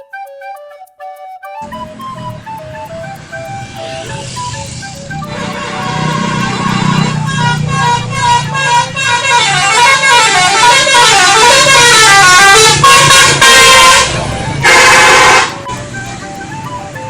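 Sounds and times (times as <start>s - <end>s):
multi-tone bus horn melody: 5.2s - 15.9s.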